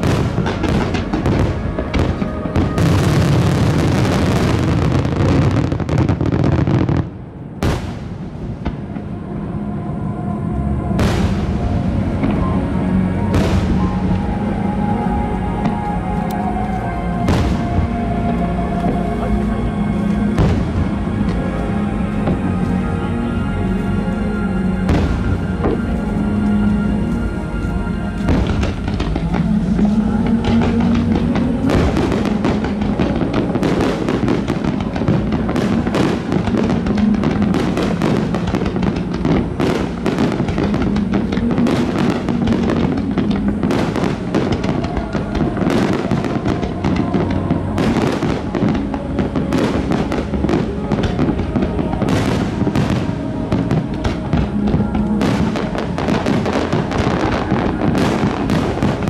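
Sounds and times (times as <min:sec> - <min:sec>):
fireworks bursting and crackling: 0:00.0 - 0:59.0
music: 0:00.0 - 0:59.0.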